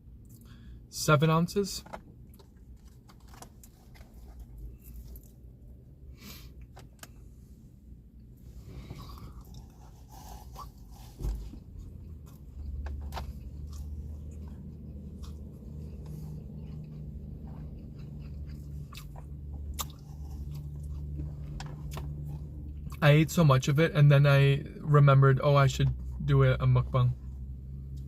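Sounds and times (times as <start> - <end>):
low steady hum: 0.0 - 28.0
person chewing food: 2.2 - 5.6, 8.7 - 23.0.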